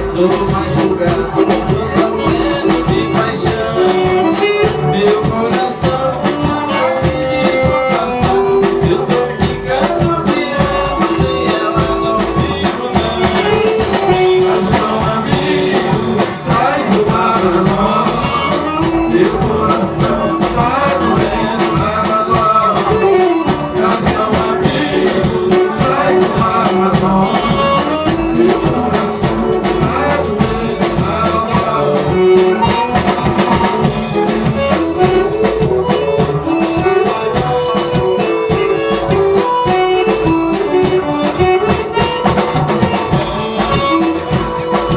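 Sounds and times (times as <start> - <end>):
live band playing dance tune: 0.0 - 44.9.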